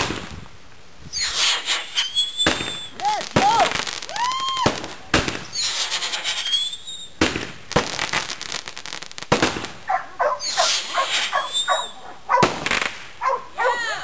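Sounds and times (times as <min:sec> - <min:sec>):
firework bangs: 0:00.0 - 0:13.2
firework crackling: 0:00.0 - 0:13.3
firework whistle: 0:01.1 - 0:07.3, 0:10.4 - 0:12.8.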